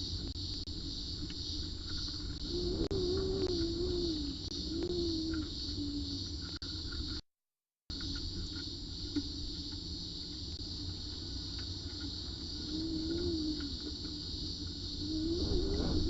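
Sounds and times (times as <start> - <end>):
cicadas droning: 0.0 - 7.2, 7.9 - 16.0
low wavering hum: 14.9 - 16.0
low rumble: 15.1 - 16.0.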